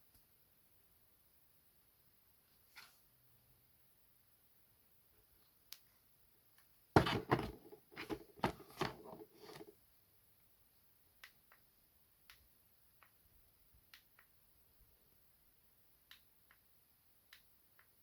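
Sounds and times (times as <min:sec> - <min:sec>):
packaging rustles and knocks: 0:07.0 - 0:09.7.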